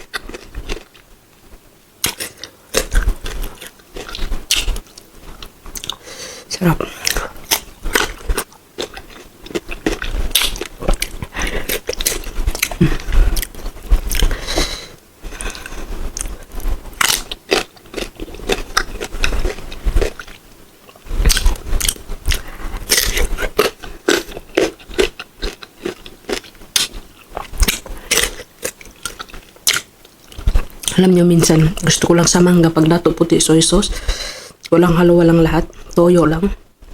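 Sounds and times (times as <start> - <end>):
crunching and chewing: 0.0 - 1.2, 2.0 - 6.1, 7.0 - 31.0.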